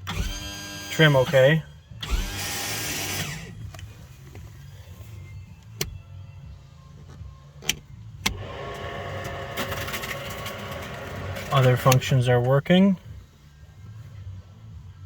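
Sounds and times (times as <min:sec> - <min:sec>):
electric trim motor running: 0:00.0 - 0:03.5.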